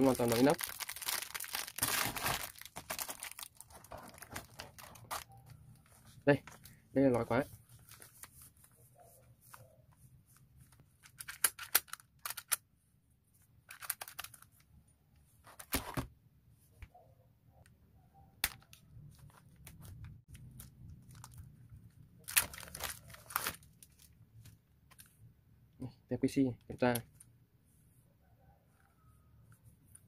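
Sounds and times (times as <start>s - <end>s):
packaging rustling: 0.0s - 5.9s, 19.5s - 24.2s.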